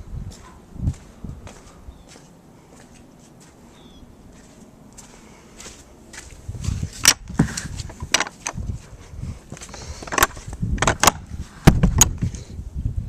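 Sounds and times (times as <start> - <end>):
footsteps crunching through snow: 0.3 - 8.0.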